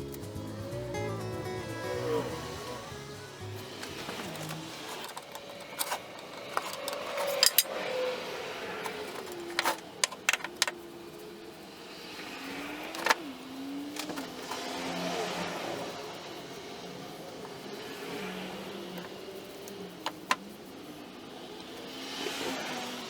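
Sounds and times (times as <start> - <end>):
metallic clicks and clinks: 3.8 - 7.8, 8.9 - 10.8.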